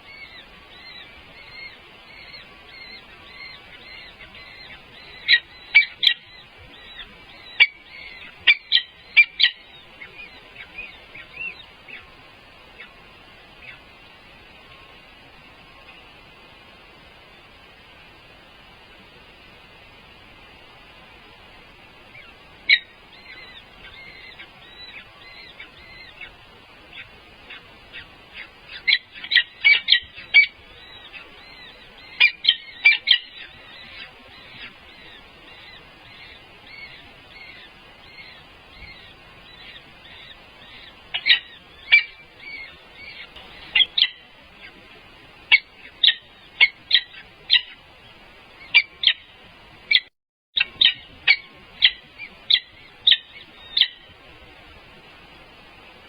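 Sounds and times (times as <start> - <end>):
eagles chirping: 0.0 - 15.0, 21.8 - 47.8.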